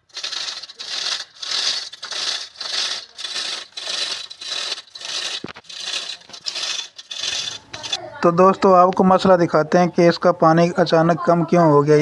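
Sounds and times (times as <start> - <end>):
rhythmic back-and-forth scraping: 0.0 - 8.2.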